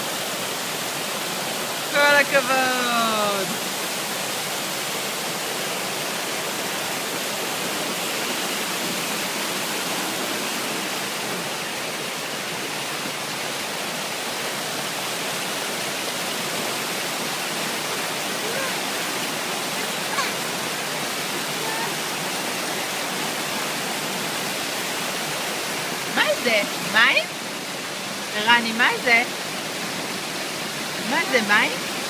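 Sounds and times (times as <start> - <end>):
water fountain splashing: 0.0 - 32.0.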